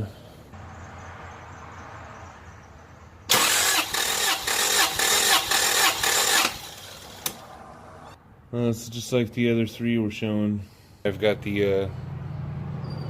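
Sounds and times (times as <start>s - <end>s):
engine starter cranking: 3.3s - 7.5s.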